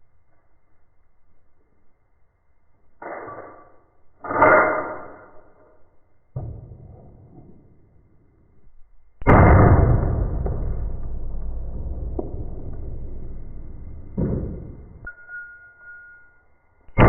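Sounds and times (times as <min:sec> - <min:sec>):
pistol shot: 0:09.2 - 0:12.6.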